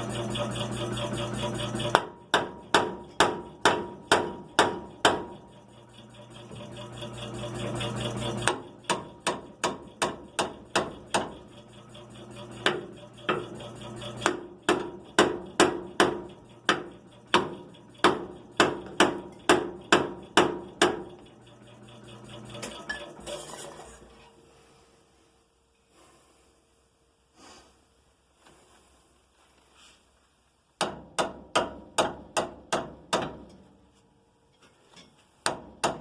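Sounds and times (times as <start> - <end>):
hammer striking metal: 1.9 - 5.4, 8.4 - 11.4, 14.2 - 21.2.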